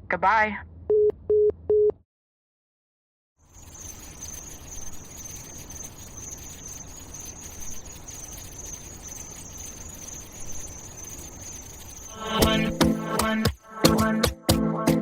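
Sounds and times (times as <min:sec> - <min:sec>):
crickets chirping: 0:03.4 - 0:14.0.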